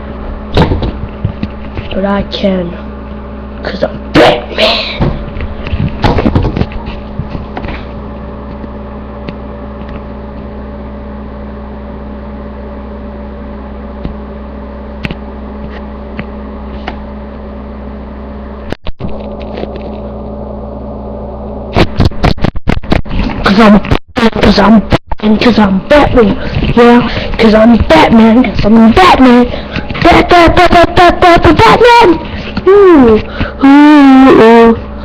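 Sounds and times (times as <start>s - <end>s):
steady mechanical hum: 0.0s - 35.0s.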